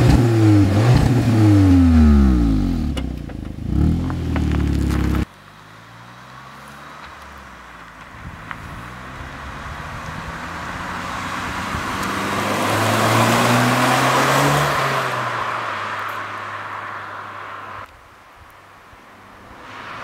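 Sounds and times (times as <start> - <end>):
car accelerating past: 8.5 - 17.8.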